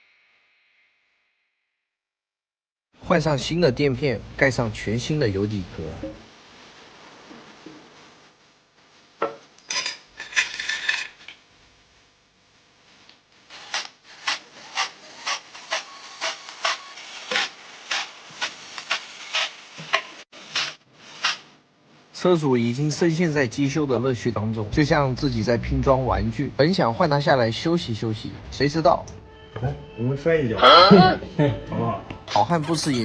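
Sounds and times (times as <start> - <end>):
metal parts scraping and clicking: 9.6 - 11.4.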